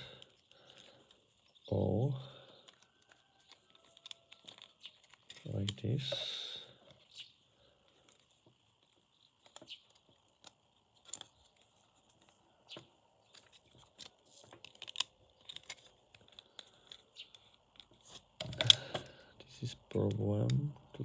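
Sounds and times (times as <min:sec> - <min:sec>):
plastic mouse parts clicking: 0:02.6 - 0:05.8, 0:13.3 - 0:19.1.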